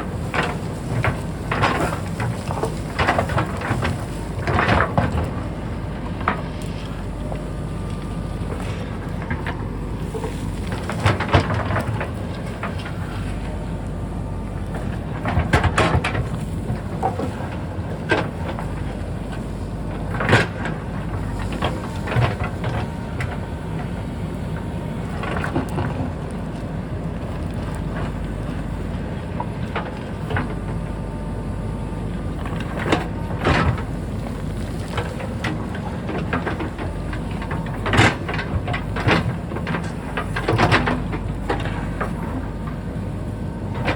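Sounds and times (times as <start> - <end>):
diesel engine under load: 0.0 - 43.9
digging knocks and clanks: 32.3 - 43.9.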